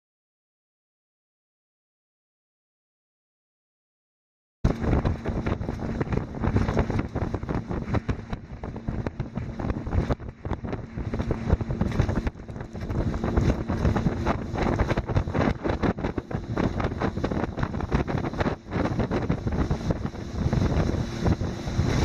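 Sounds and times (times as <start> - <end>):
wind buffeting microphone: 4.7 - 22.0.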